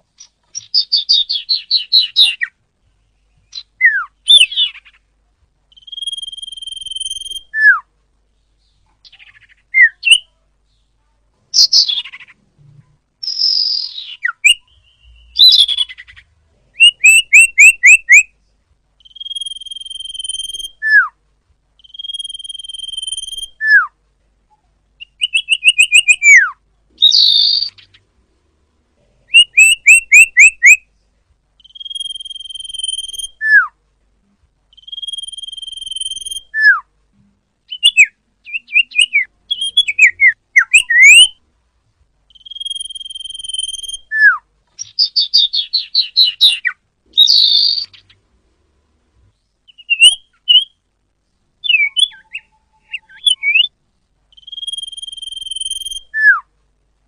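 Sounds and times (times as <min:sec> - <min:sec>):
bird singing trills and whistles: 0:00.2 - 0:02.5, 0:03.5 - 0:05.0, 0:05.7 - 0:07.9, 0:08.6 - 0:10.3, 0:11.5 - 0:12.4, 0:13.2 - 0:18.3, 0:19.0 - 0:21.1, 0:21.8 - 0:23.9, 0:25.0 - 0:28.0, 0:29.3 - 0:30.8, 0:31.6 - 0:33.7, 0:34.7 - 0:36.9, 0:37.7 - 0:41.4, 0:42.3 - 0:48.2, 0:49.7 - 0:50.8, 0:51.6 - 0:53.7, 0:54.3 - 0:56.4.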